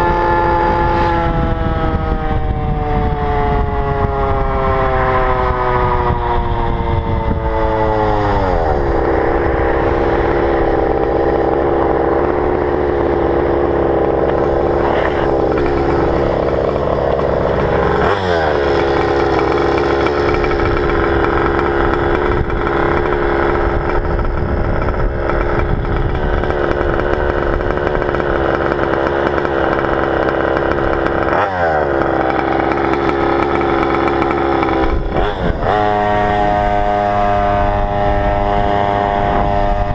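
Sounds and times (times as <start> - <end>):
two-stroke engine running hard: 0.0 - 39.9.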